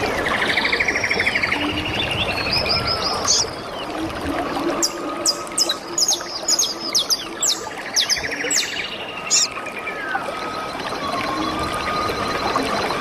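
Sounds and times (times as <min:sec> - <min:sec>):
flowing water: 0:00.0 - 0:13.0
bird trill: 0:05.6 - 0:09.5
small birds chirping: 0:06.2 - 0:09.5.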